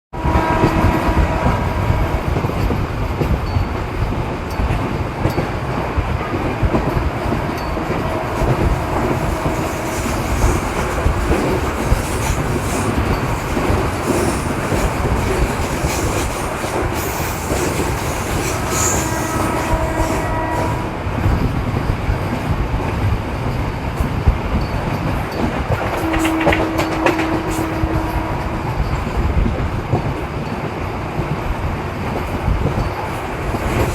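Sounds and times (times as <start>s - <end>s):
train wheels rumbling on track: 0.1s - 33.9s.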